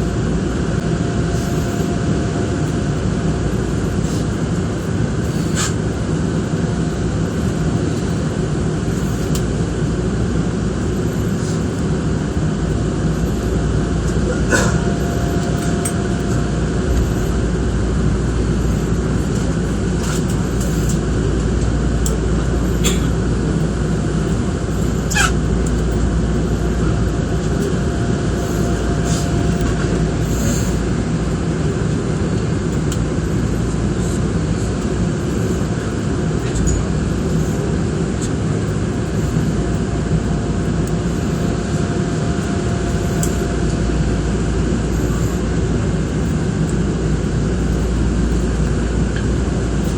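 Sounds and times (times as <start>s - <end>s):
electric train low rumble: 0.0s - 49.9s.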